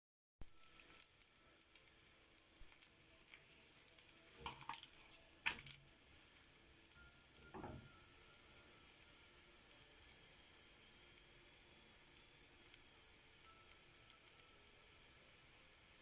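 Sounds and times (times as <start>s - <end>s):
food sizzling in a frying pan: 0.4s - 16.0s
knocks on a pan: 4.4s - 4.8s, 7.5s - 7.9s.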